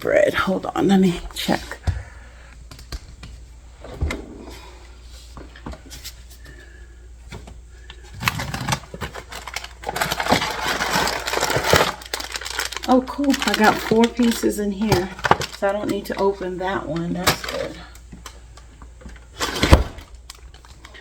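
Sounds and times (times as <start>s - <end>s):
packaging rustling: 8.1s - 21.0s.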